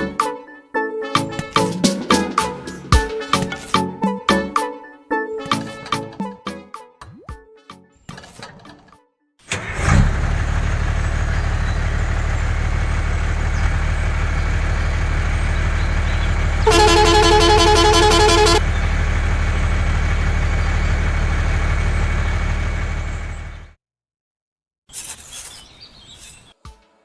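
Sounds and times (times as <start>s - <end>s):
truck engine running: 9.5s - 23.8s
truck horn: 16.2s - 19.0s.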